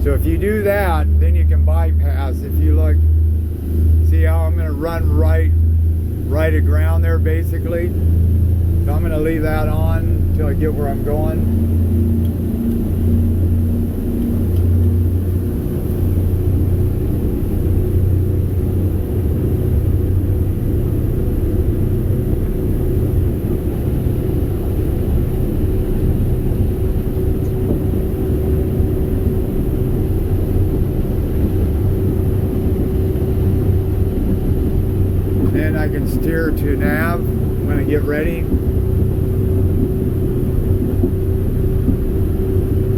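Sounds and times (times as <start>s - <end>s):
boat engines droning: 0.0s - 42.9s.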